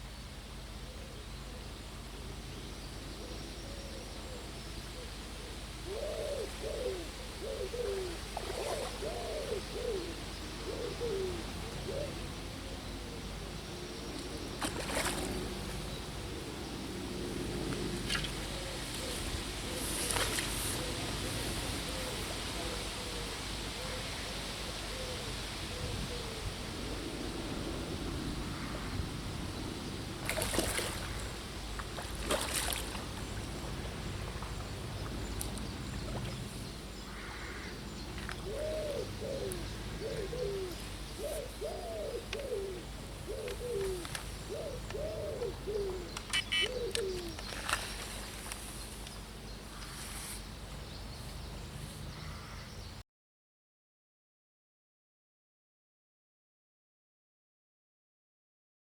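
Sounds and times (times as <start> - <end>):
pigeon cooing: 5.8 - 13.2, 18.4 - 26.4, 38.3 - 47.4.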